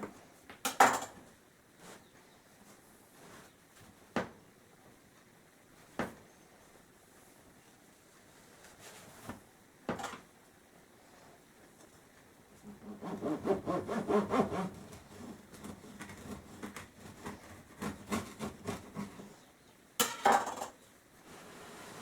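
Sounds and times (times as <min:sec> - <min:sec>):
knife sawing through bread: 0:12.7 - 0:19.4.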